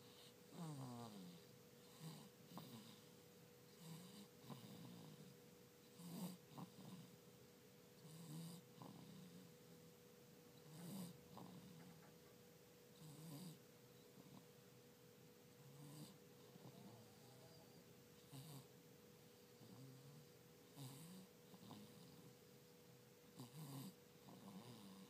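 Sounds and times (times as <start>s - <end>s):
faint steady hum: 0.0s - 25.0s
faint snoring with whistle: 6.0s - 7.1s, 23.4s - 25.0s.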